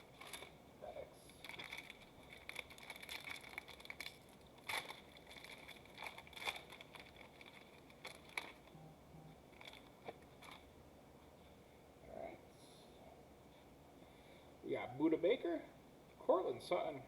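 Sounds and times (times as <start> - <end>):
wrapper crinkling and tearing: 0.0 - 0.5, 1.4 - 8.7, 9.5 - 10.7.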